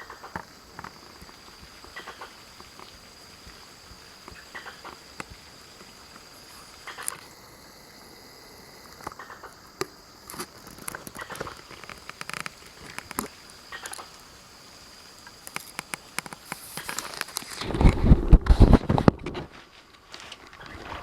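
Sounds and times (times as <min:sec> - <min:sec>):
insects droning: 0:00.0 - 0:21.0
clicks and ticks: 0:15.4 - 0:17.6.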